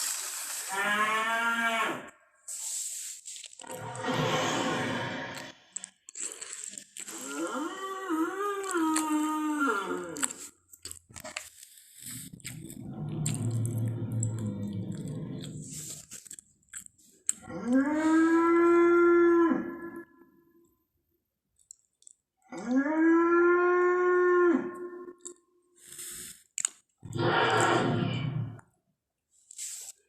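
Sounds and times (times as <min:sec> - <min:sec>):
rough noisy creature call: 0:03.6 - 0:05.8, 0:12.2 - 0:16.0, 0:27.0 - 0:28.6
low rumble: 0:12.7 - 0:15.8
long rising creature calls: 0:27.1 - 0:28.6.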